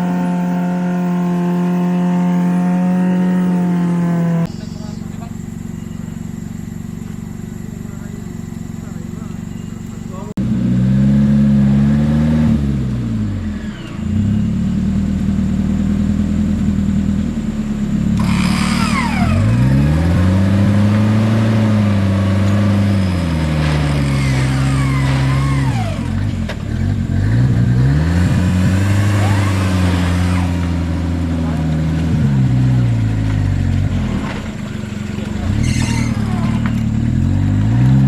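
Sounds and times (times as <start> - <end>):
engine revving hard: 0.0 - 4.6, 10.4 - 14.8, 18.2 - 33.0, 35.2 - 38.0.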